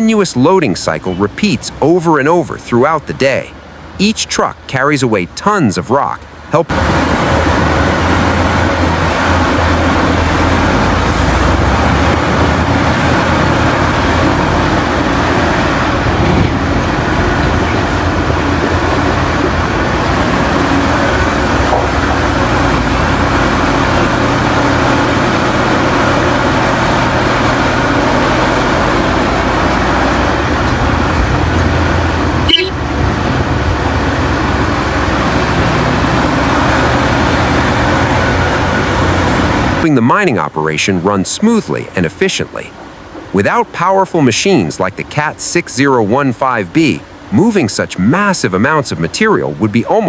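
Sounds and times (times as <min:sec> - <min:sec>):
low diesel engine drone: 0:00.0 - 0:50.0.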